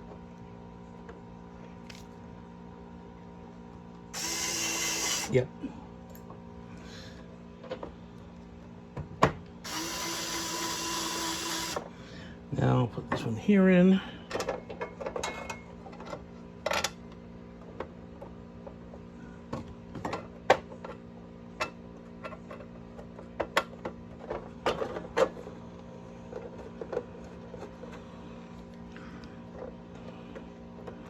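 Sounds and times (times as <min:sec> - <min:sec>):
steady low hum: 0:00.0 - 0:31.0
screwdriver and screws clicking: 0:04.2 - 0:05.3.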